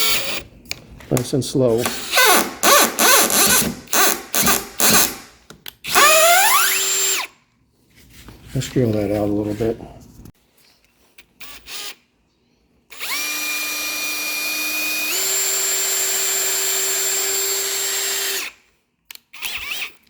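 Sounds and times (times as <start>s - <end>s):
power drill drilling into wood: 1.9s - 5.3s, 5.9s - 7.3s, 13.0s - 18.6s, 19.4s - 20.0s.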